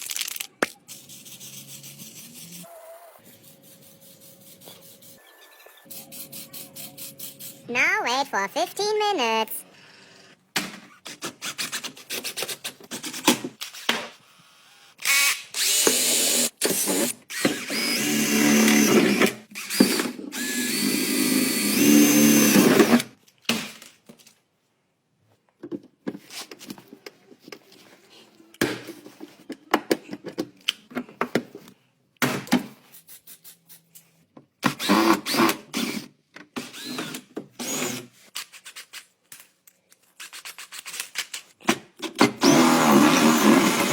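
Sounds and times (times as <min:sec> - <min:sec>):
power tools running: 0:15.0 - 0:23.1, 0:42.4 - 0:43.9.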